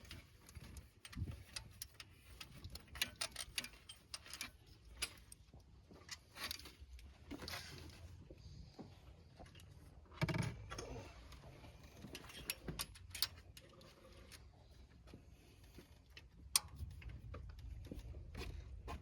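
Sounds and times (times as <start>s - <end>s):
metal tools clinking and tapping: 0.0s - 5.4s, 12.0s - 13.8s.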